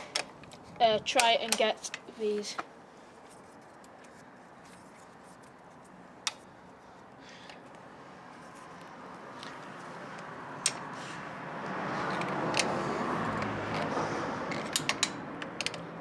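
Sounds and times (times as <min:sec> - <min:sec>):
vehicle passing: 0:05.9 - 0:16.0
spanner clicking on bike pedal: 0:12.1 - 0:13.9, 0:14.5 - 0:15.9.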